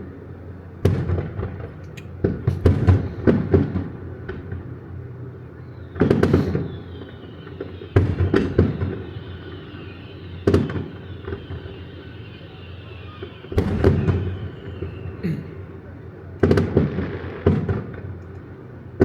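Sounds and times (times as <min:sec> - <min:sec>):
crackling fizz of fireworks: 0:00.0 - 0:19.0
firework shells booming: 0:00.8 - 0:04.8, 0:05.9 - 0:18.2.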